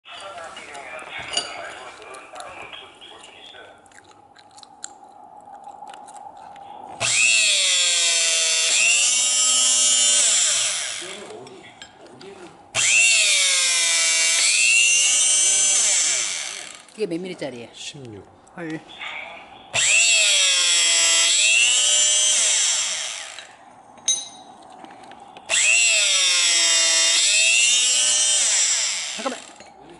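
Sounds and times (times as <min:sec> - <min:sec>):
rebar cutter motor whining: 0:07.0 - 0:11.4, 0:12.7 - 0:17.0, 0:19.8 - 0:23.6, 0:25.5 - 0:29.7.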